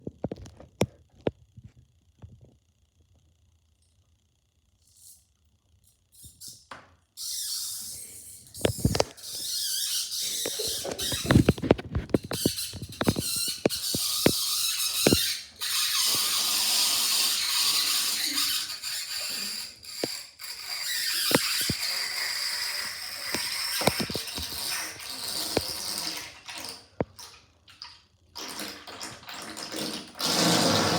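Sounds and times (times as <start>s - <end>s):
drain gurgles and pops: 23.0s - 30.9s.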